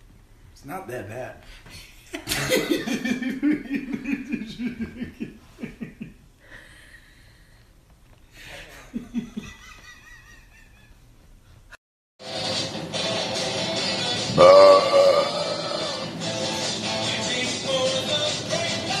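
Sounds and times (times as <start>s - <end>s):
men laughing hard: 2.2s - 6.2s, 8.5s - 11.0s.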